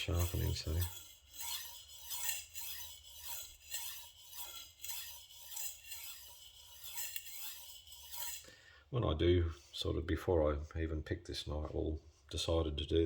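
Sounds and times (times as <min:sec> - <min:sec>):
knife scraping on sharpening stone: 0:00.0 - 0:08.5.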